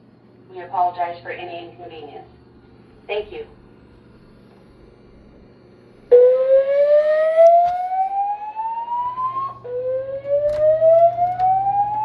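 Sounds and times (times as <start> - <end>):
fire alarm slow whoop tone: 6.1 - 12.0.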